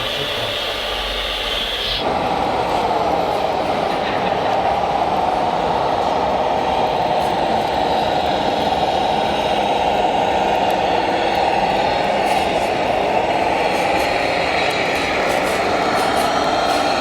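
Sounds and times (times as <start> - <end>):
electric motors whining: 0.0 - 3.4.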